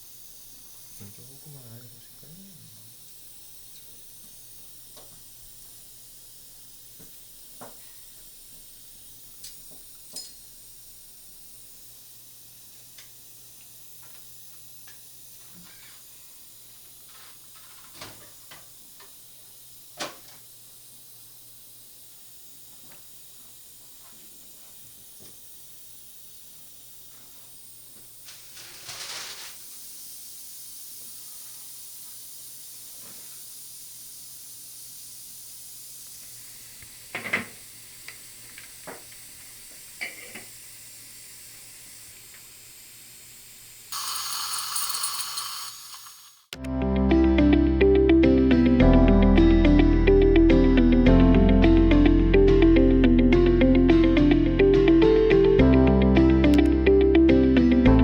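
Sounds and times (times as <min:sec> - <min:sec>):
faint suction hiss: 0:00.0 - 0:04.7
short loud hiss: 0:28.3 - 0:29.8, 0:43.9 - 0:46.6.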